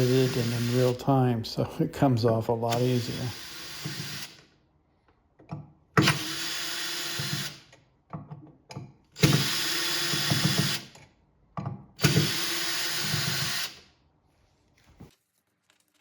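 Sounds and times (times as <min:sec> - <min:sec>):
cordless power drill running: 0:00.0 - 0:01.1, 0:02.7 - 0:04.4, 0:06.0 - 0:07.7, 0:09.2 - 0:11.0, 0:12.0 - 0:13.8.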